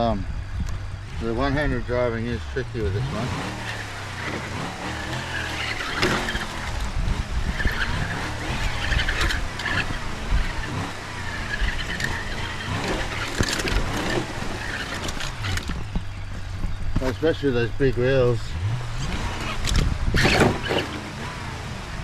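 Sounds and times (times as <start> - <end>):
electric motor whine: 0.6 - 16.1
vehicle sound effect: 0.8 - 21.8
wheels knocking against stone: 3.8 - 17.4.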